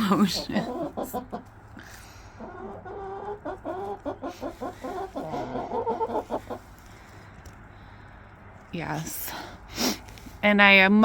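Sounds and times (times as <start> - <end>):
hens clucking and squawking: 0.0 - 6.9.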